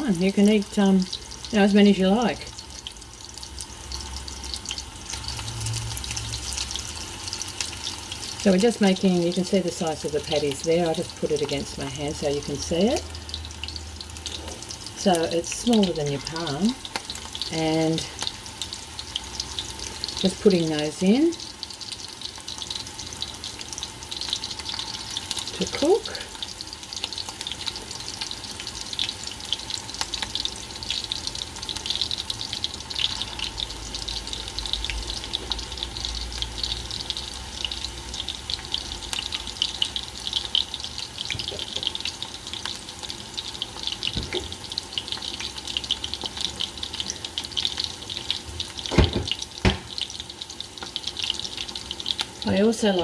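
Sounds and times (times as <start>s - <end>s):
patties sizzling in oil: 0.0s - 53.0s
sharp knocks: 48.9s - 50.0s.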